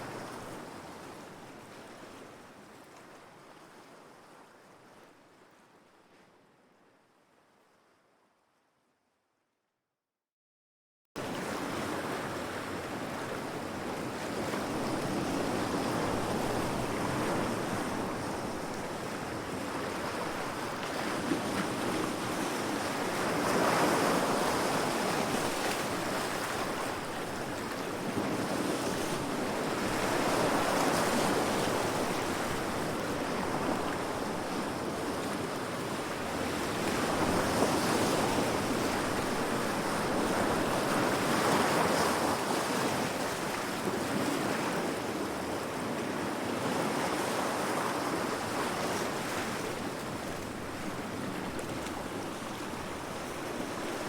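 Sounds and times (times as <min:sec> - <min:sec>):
ocean waves breaking against rocks: 0:11.5 - 0:54.0.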